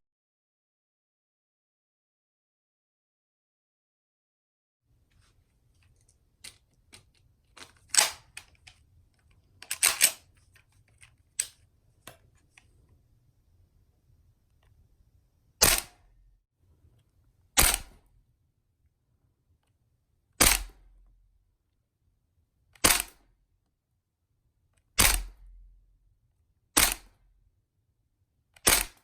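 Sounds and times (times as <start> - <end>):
airsoft gun shots: 15.6 - 16.0, 17.6 - 18.0, 20.4 - 20.8, 22.8 - 23.2, 25.0 - 25.4, 26.8 - 27.2, 28.6 - 29.0.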